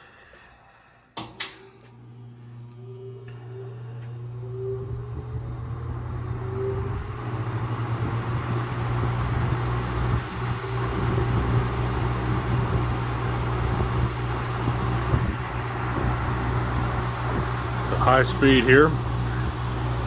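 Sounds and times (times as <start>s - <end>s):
fan motor hum: 0.0s - 20.0s
rush of air from fan: 3.2s - 20.0s.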